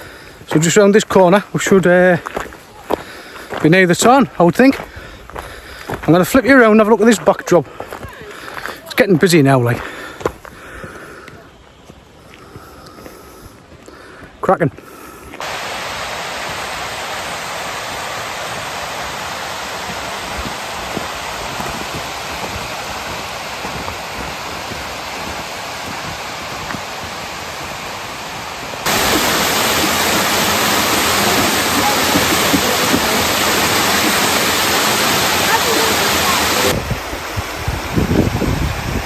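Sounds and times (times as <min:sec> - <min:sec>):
waterfall rushing: 0:15.4 - 0:39.0.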